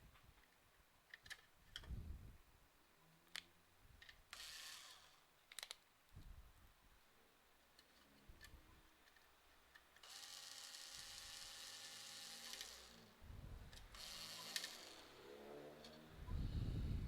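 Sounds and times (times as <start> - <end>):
electric screwdriver running: 4.4 - 5.2, 10.0 - 13.1, 13.9 - 15.1.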